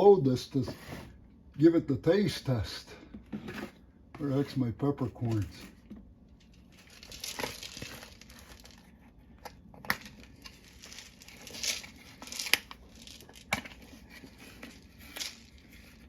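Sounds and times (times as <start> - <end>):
plastic packaging crinkling: 6.7 - 8.9, 10.0 - 16.0.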